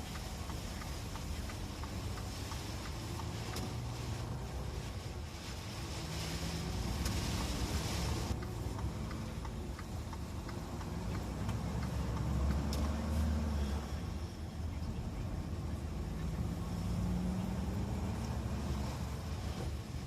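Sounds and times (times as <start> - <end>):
hiss: 0.0 - 14.5
vehicle engine hum: 0.0 - 20.0.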